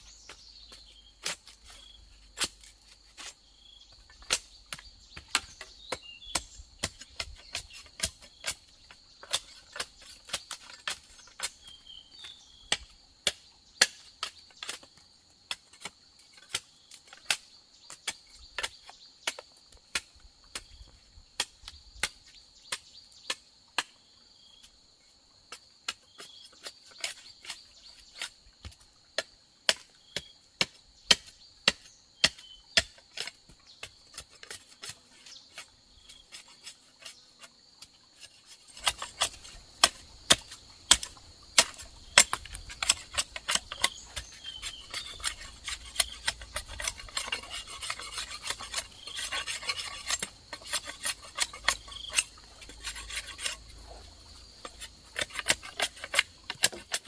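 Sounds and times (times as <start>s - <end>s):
insects droning: 0.0s - 57.0s
tool striking bamboo: 28.2s - 35.0s, 38.8s - 53.6s, 55.2s - 57.0s.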